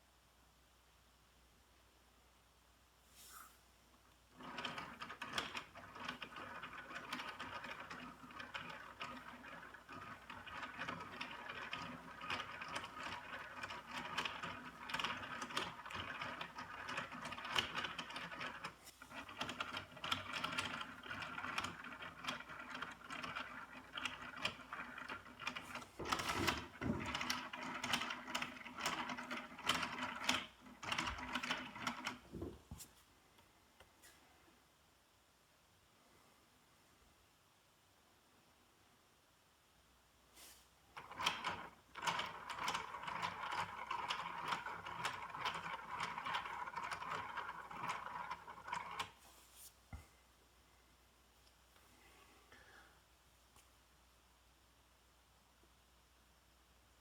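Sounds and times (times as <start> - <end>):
plastic gears clicking and rattling: 4.4 - 32.3, 41.0 - 49.2.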